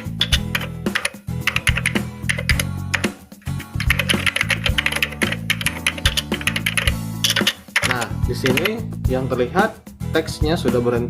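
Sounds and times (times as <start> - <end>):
keyboard typing clicks: 0.0 - 8.8
background music with low notes: 0.0 - 11.0.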